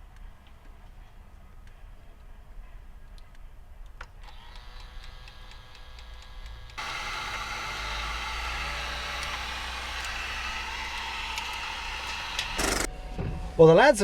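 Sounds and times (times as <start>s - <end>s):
label maker motor ticking: 4.5s - 12.9s.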